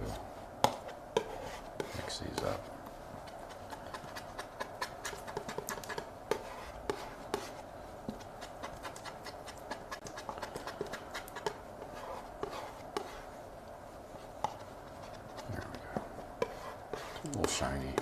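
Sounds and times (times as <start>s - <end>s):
palette knife scraping: 0.7s - 13.4s, 14.4s - 18.0s
palette knife tapping: 3.3s - 7.5s, 8.1s - 13.1s.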